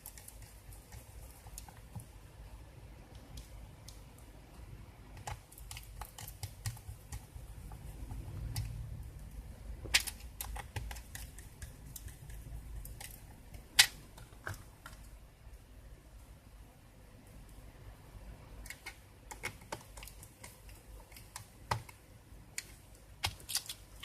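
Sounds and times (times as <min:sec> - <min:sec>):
sharp plastic snaps: 0:09.8 - 0:15.1, 0:18.6 - 0:24.0.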